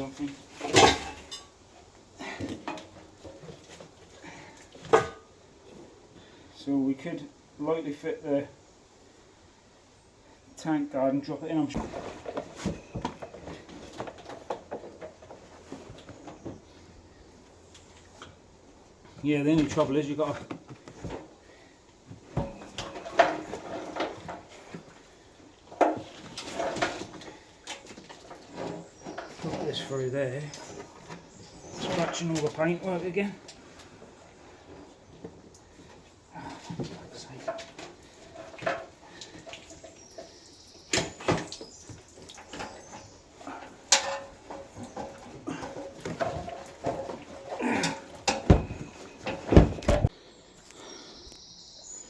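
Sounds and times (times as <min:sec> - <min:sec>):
metal knocks scrapes and clunks: 0:22.2 - 0:25.0, 0:25.7 - 0:33.0, 0:42.5 - 0:50.1
fuel tank banging against chassis: 0:43.9 - 0:50.1.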